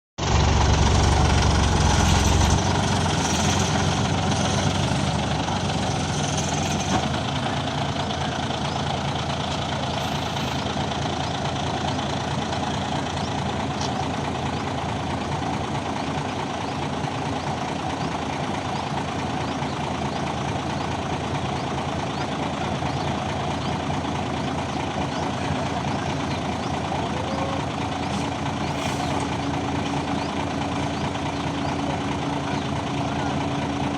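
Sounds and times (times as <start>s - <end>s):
diesel engine running: 0.2s - 33.9s
short hisses: 28.6s - 29.3s.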